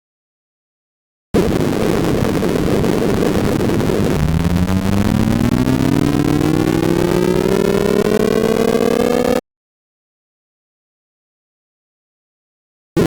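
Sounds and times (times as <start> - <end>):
rapid electronic tones: 1.5 - 9.4
buzzy tone gliding upward: 3.7 - 9.4.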